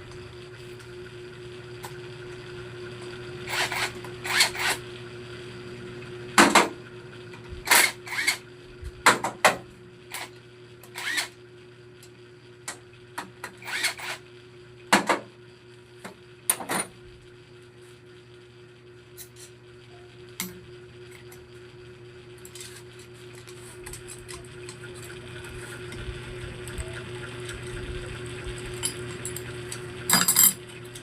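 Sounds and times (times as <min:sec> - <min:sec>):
steady hum: 0:00.0 - 0:31.0
metal tools clinking: 0:30.1 - 0:30.6.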